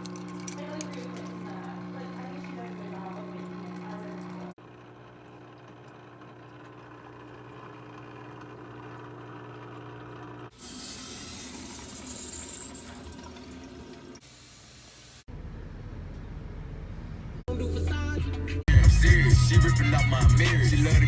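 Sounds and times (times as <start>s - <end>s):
water running from a tap: 0.0s - 15.2s.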